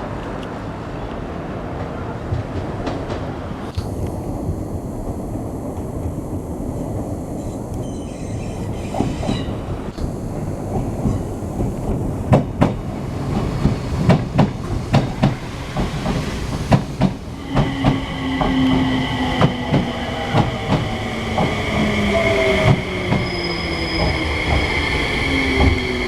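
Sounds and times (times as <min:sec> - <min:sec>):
electric train rumbling: 0:00.0 - 0:26.0
train wheels clacking over rail joints: 0:10.7 - 0:21.6.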